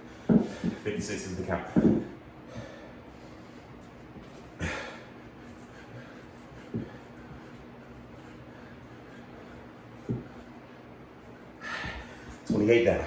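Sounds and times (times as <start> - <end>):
faint steady hum: 0.0 - 13.0
man breathing hard: 2.4 - 10.6, 11.5 - 12.4.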